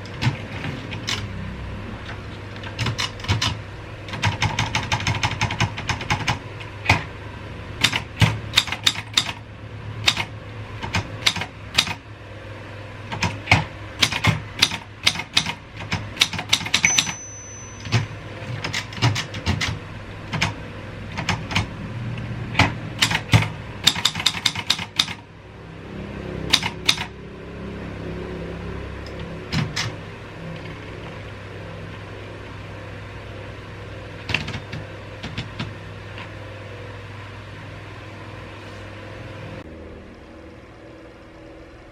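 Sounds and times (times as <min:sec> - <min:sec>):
typewriter key strikes: 0:07.8 - 0:09.4, 0:10.0 - 0:12.0, 0:13.1 - 0:17.2, 0:17.8 - 0:19.8, 0:22.6 - 0:25.2
typewriter bell ring: 0:16.7 - 0:18.3.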